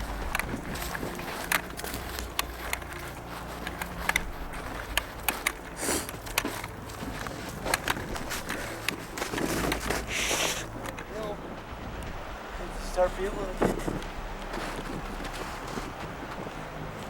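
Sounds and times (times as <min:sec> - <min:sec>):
brush swishing: 0:00.0 - 0:10.8
twigs snapping underfoot: 0:00.0 - 0:11.2.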